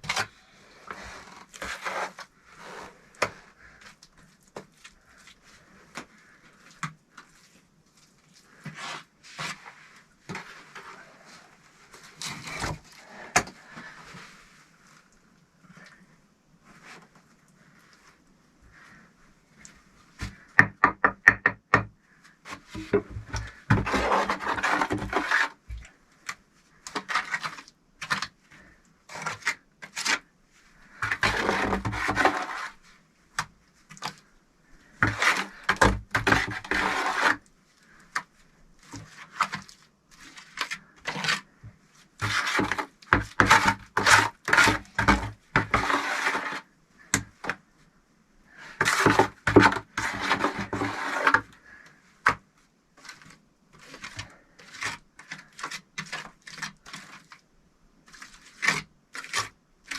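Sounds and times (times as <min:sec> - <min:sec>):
mortar being scraped: 0:00.0 - 0:03.9, 0:04.6 - 0:11.5, 0:22.5 - 0:32.9, 0:33.9 - 0:46.7, 0:48.6 - 0:51.6
trowel tapping bricks: 0:20.6 - 0:21.9.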